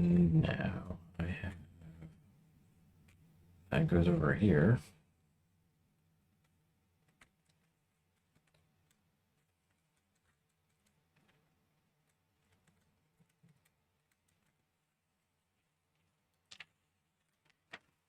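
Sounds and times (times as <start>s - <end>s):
plastic pieces clicking together: 16.3s - 18.0s.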